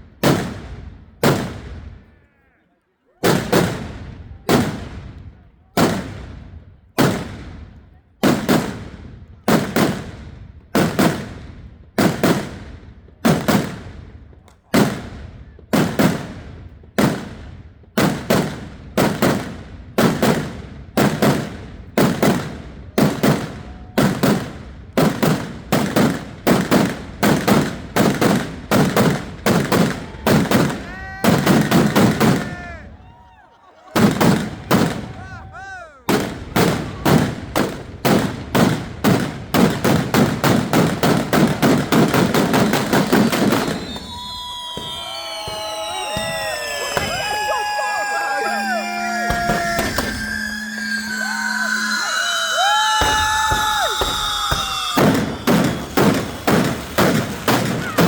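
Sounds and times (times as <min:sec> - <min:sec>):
fireworks bangs: 0:00.0 - 0:02.3, 0:03.2 - 0:58.0
firework whistles: 0:41.9 - 0:58.0.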